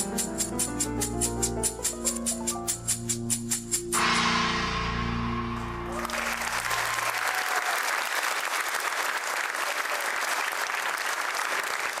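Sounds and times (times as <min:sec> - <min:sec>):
held music notes: 0:00.0 - 0:07.0
audience applauding: 0:06.0 - 0:12.0.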